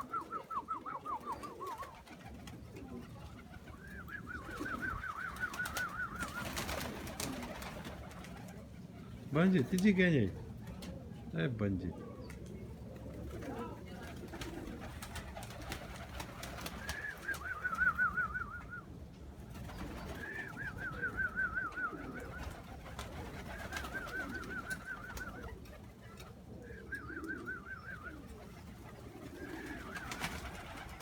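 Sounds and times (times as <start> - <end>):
pigeon trilled call: 0.0 - 8.4, 13.4 - 18.9, 19.5 - 31.0
pigeons cooing: 0.0 - 11.3, 11.9 - 31.0.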